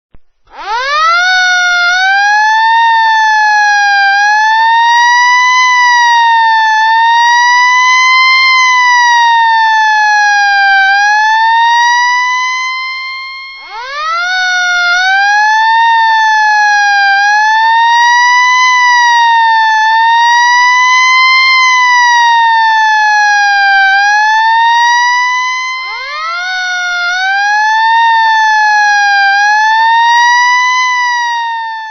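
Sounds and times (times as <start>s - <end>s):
police siren wailing: 0.5s - 31.9s.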